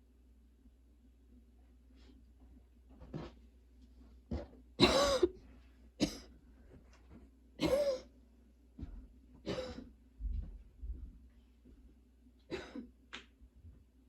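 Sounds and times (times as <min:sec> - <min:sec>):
girl coughing: 0:04.8 - 0:05.4, 0:06.0 - 0:06.3, 0:07.6 - 0:08.1, 0:09.5 - 0:09.8, 0:12.5 - 0:12.9.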